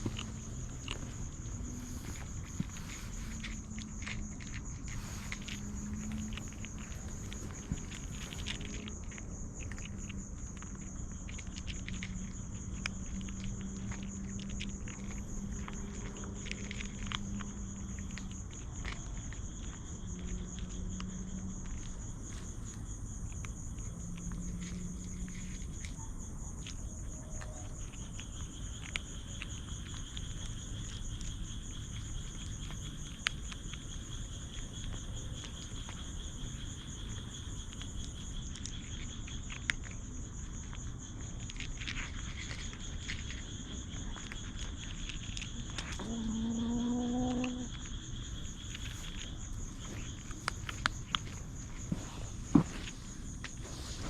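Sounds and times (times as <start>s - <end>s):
lower insect trill: 0.0s - 54.0s
small clicks and rustles: 0.0s - 54.0s.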